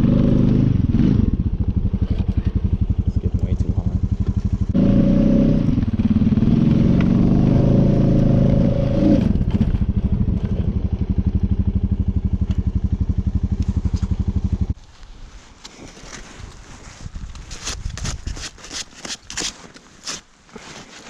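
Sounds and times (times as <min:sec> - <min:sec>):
atv engine revving and idling: 0:00.0 - 0:14.8.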